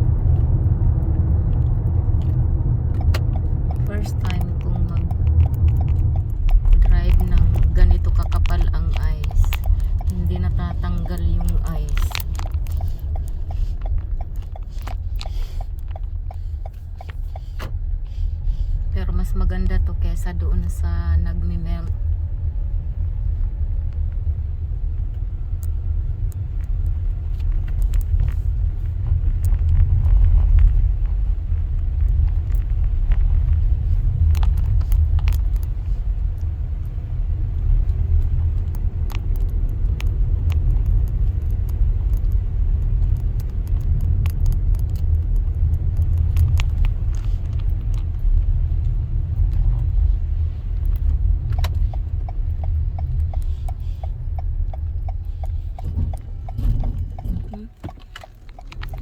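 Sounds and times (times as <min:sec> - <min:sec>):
tyres and engine rumbling: 0:00.0 - 0:59.0
ice clicking and crackling: 0:37.6 - 0:49.9.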